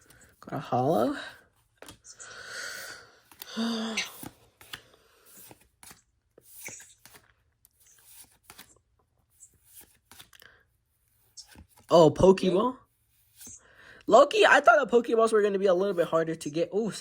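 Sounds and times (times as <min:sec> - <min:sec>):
cards rustling and clicking: 0:00.0 - 0:02.2, 0:03.0 - 0:12.0, 0:13.0 - 0:13.6.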